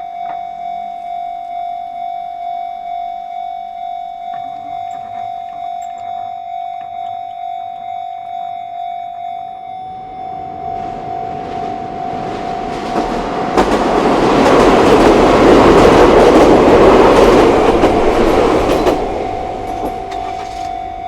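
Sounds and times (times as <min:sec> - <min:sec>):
crossing warning bell ringing: 0:00.0 - 0:21.0
train wheels clattering: 0:10.7 - 0:21.0.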